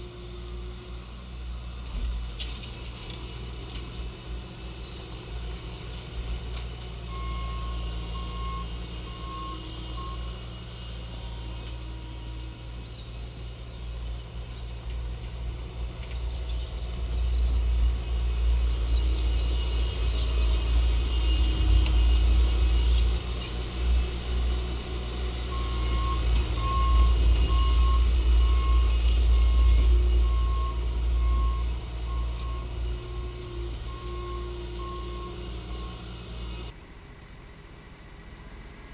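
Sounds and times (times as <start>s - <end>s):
diesel engine running: 0.0s - 38.8s
backup alarm beeping: 25.6s - 33.3s.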